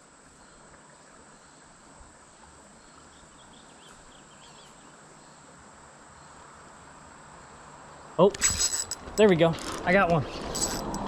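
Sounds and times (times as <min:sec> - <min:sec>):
faint outdoor ambience: 0:00.0 - 0:11.0
insect trill: 0:05.2 - 0:11.0.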